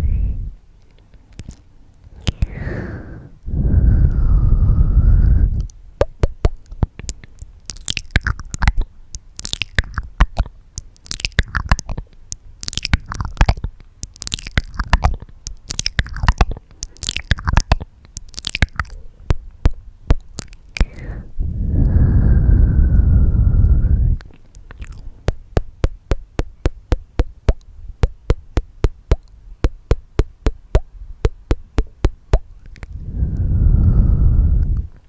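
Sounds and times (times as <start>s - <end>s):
wet tongue clicks and lip smacks: 0.8s - 2.5s, 5.5s - 21.1s, 24.2s - 33.0s
breath into microphone: 2.1s - 5.6s, 20.8s - 24.2s, 32.9s - 34.9s.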